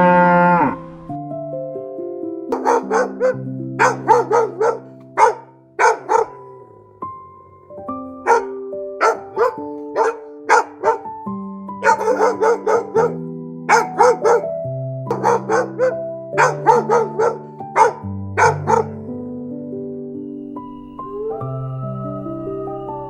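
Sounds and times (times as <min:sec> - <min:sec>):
background music with held notes: 0:00.0 - 0:23.0
animal barking: 0:02.5 - 0:07.1, 0:08.2 - 0:11.2, 0:11.8 - 0:14.5, 0:15.1 - 0:19.0.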